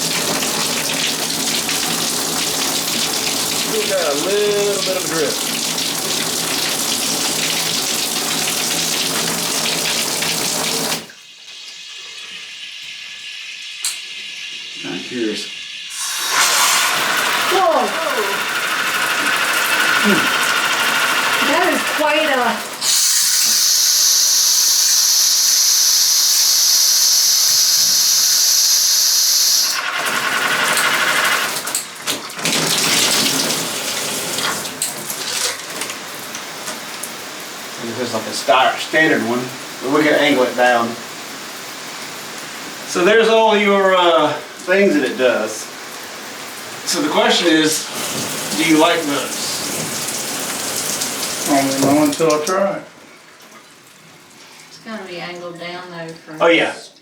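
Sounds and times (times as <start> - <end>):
water running in bathtub: 0.0 - 56.8.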